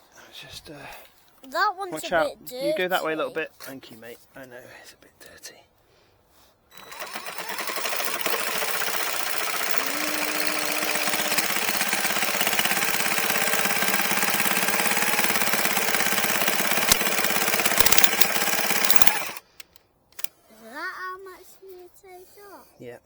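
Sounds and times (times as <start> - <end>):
power cutting tool buzzing: 6.7 - 19.6.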